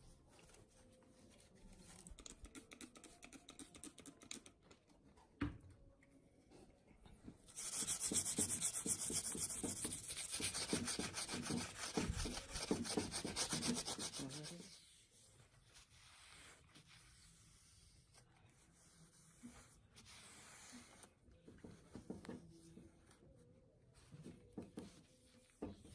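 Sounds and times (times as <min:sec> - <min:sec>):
rubbing strokes on hard surface: 0:07.5 - 0:22.9.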